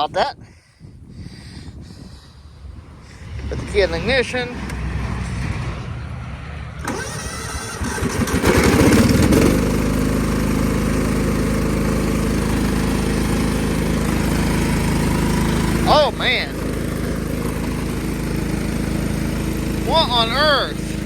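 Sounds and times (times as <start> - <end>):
mower engine running: 3.0 - 21.0
starter cranking: 6.8 - 9.6.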